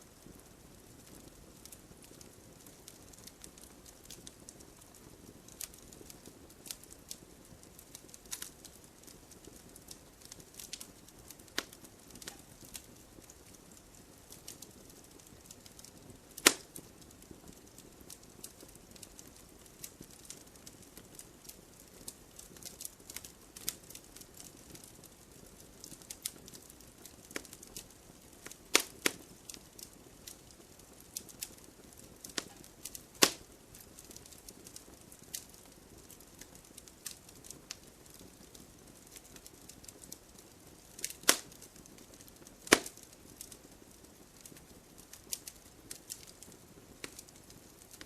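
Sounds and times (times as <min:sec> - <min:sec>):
firewood crackling and popping: 0:00.0 - 0:48.0
low fire hiss: 0:00.0 - 0:48.0.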